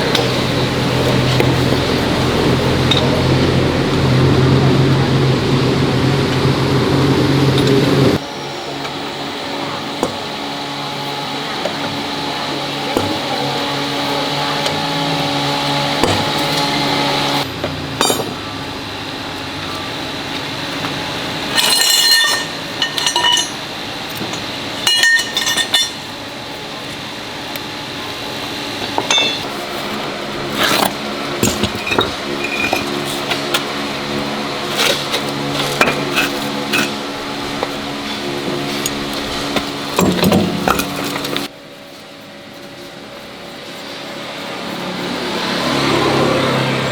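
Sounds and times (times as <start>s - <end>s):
steady mechanical hum: 0.0s - 46.9s
metal tools clinking and knocking: 18.0s - 18.5s, 21.5s - 26.1s, 29.0s - 29.5s, 30.6s - 33.6s.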